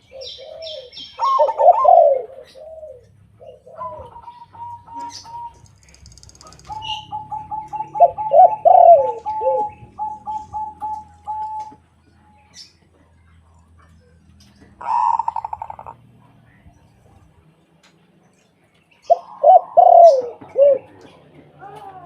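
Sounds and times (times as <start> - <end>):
deep drawn-out dove coos: 0.0 - 11.9, 14.4 - 16.7, 19.0 - 22.0.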